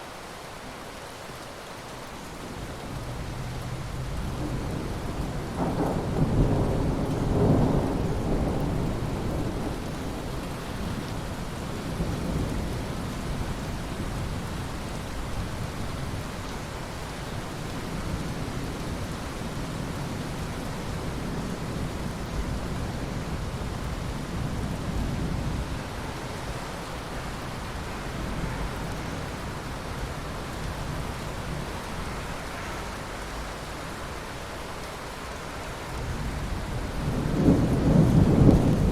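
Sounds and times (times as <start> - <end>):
heavy rain hissing: 0.0 - 38.9
distant thunder rumbling: 3.0 - 13.5, 36.0 - 38.9.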